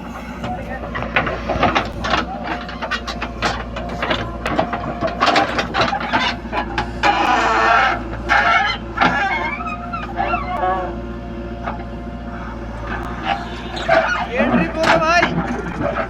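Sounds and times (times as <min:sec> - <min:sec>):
diesel engine running: 0:00.0 - 0:16.0
machine knocks and clatter: 0:00.4 - 0:10.2, 0:12.9 - 0:16.0.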